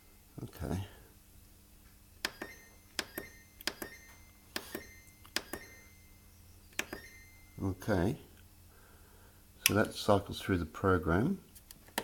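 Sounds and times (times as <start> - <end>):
short electronic beep: 2.4 - 7.8
button double clicks: 6.8 - 7.2.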